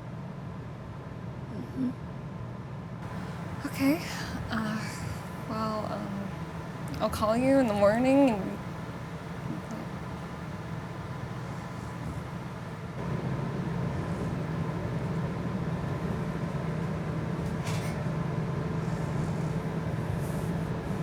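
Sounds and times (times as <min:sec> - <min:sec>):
vehicle engine rumble: 0:03.0 - 0:18.8.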